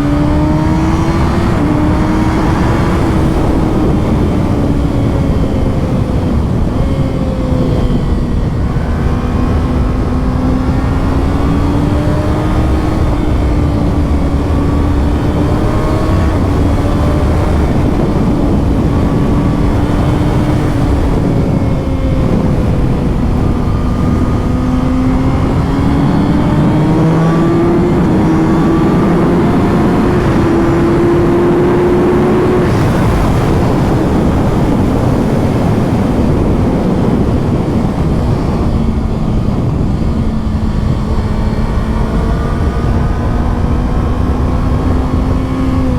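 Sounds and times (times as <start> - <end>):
motorcycle engine at speed: 0.0 - 45.9
wind on microphone: 0.0 - 45.9.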